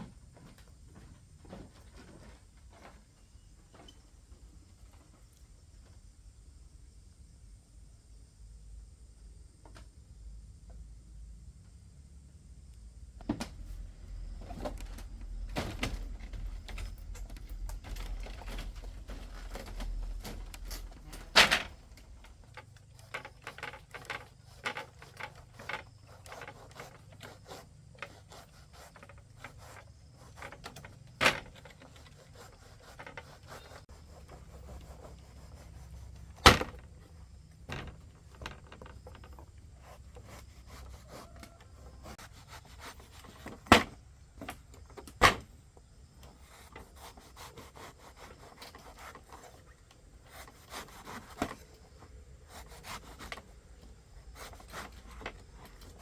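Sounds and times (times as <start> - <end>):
hard objects clicking and knocking: 36.2 - 40.5.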